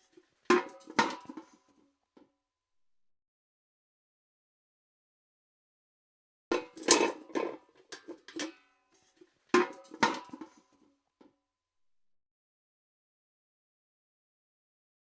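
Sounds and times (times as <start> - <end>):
steel bucket clanking: 0.1 - 1.6, 6.5 - 8.6, 9.6 - 10.7.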